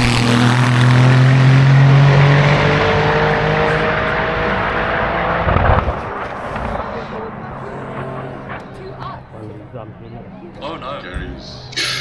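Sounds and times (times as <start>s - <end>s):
race car engine at high revs: 0.0s - 10.4s.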